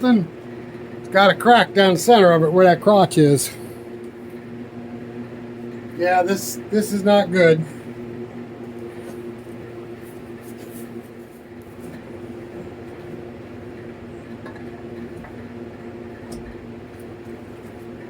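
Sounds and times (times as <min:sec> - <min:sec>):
small engine humming: 0:00.0 - 0:09.9.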